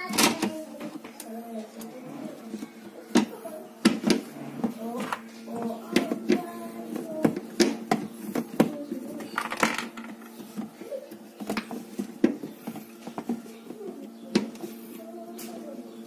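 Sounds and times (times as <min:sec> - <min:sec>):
steady low hum: 0:00.0 - 0:16.0
plastic parts clicking and knocking: 0:02.5 - 0:10.8.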